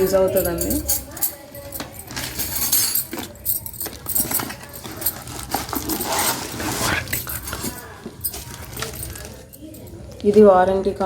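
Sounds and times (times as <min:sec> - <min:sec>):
metal clinks and rattles: 0:00.0 - 0:10.4
packaging rustling: 0:03.2 - 0:10.2.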